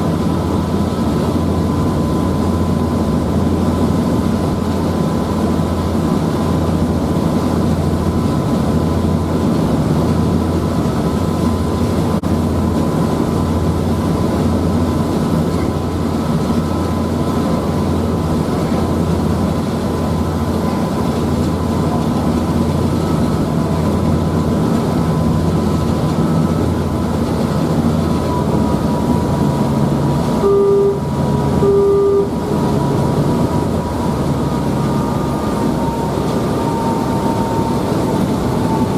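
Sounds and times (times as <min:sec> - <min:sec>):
ferry engine droning: 0:00.0 - 0:38.9
thin steady whine: 0:00.0 - 0:38.9
short beeps: 0:30.4 - 0:32.4.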